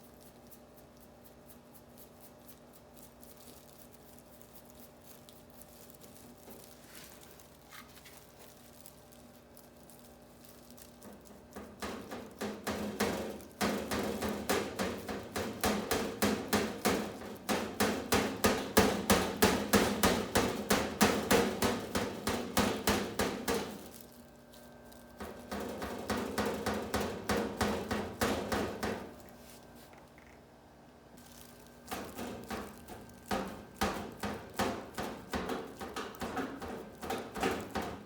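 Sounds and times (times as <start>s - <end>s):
hammering on metal: 11.5s - 24.0s, 25.2s - 29.2s, 31.9s - 38.0s.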